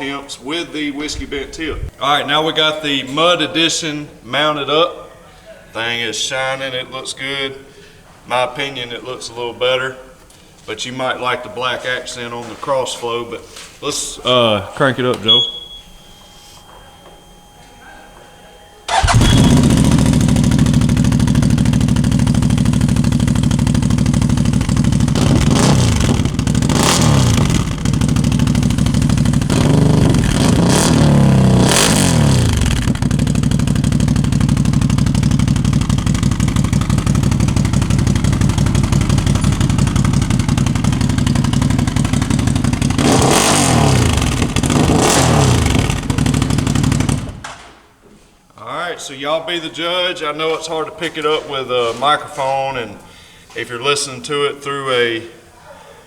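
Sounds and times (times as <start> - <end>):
quick throttle revs: 18.9 - 47.4
motorcycle engine idling: 18.9 - 47.5.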